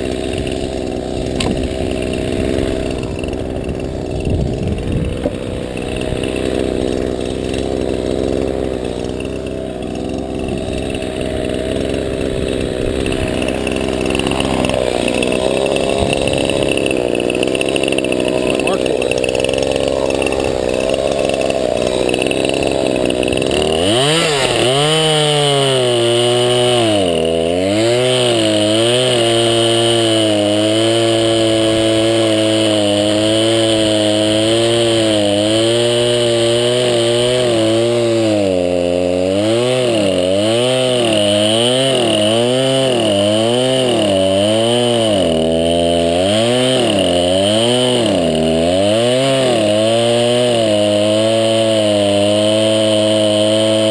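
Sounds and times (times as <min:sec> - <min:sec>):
chainsaw cutting wood: 0:00.0 - 0:53.9.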